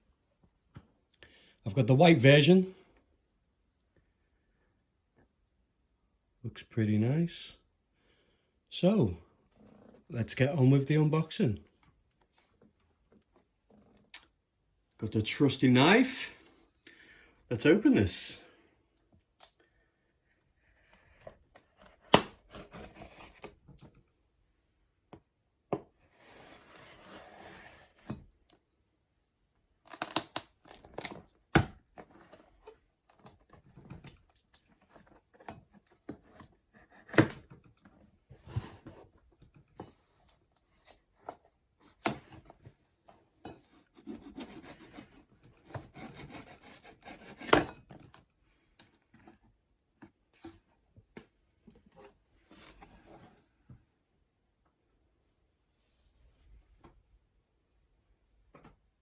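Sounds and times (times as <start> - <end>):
cardboard and tape tearing: 29.8 - 31.3
knife cutting packing tape: 45.7 - 47.8.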